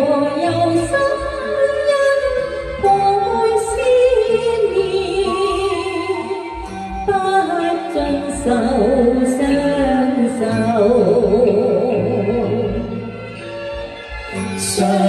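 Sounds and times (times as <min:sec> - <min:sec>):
slow song accompaniment: 0:00.0 - 0:15.0
person singing: 0:14.4 - 0:15.0.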